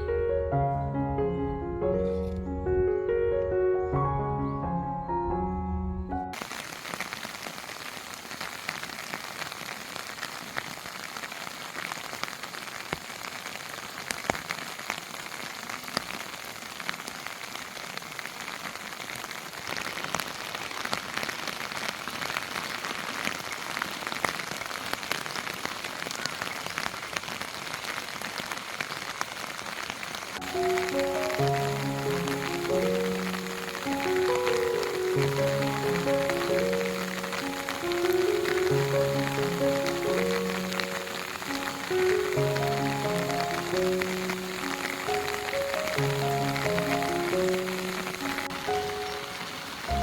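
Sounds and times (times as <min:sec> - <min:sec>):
background music: 0:00.0 - 0:06.4, 0:30.4 - 0:50.0
steady rain falling: 0:06.3 - 0:50.0.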